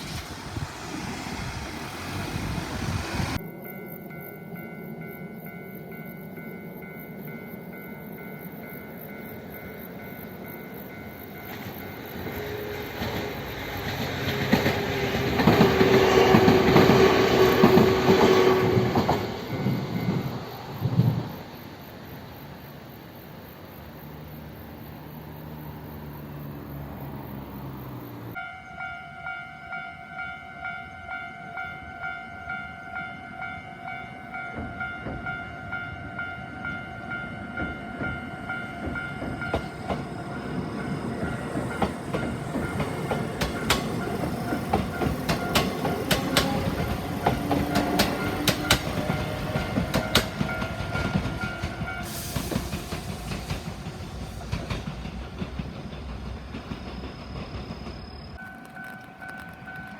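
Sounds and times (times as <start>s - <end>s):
level crossing warning bell: 3.6s - 13.4s, 28.3s - 52.1s, 58.3s - 59.9s
train wheels clacking over rails: 10.2s - 21.7s, 37.1s - 59.9s.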